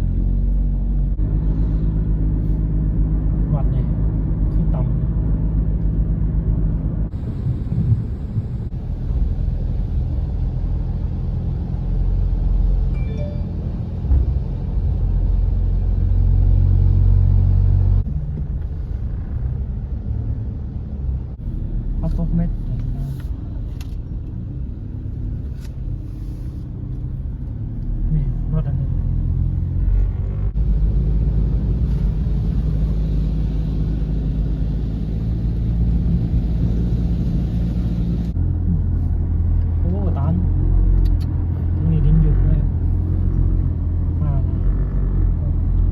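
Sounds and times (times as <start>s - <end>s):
car driving rumble: 0.0s - 45.9s.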